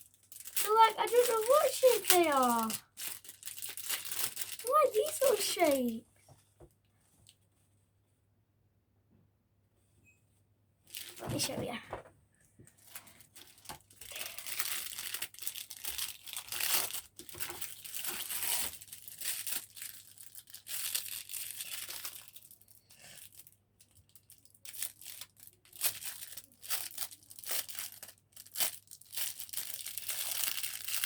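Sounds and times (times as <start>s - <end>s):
packaging crinkling and tearing: 0.0s - 6.0s, 10.9s - 11.5s, 12.8s - 31.0s.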